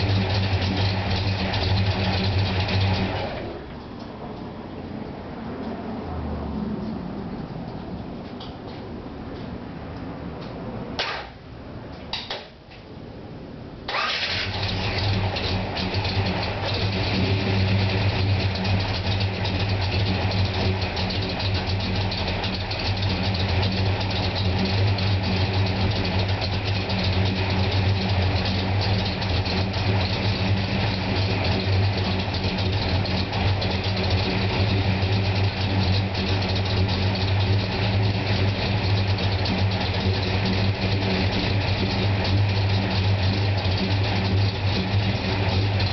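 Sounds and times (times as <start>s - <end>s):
car engine starting and idling: 0.0s - 45.9s.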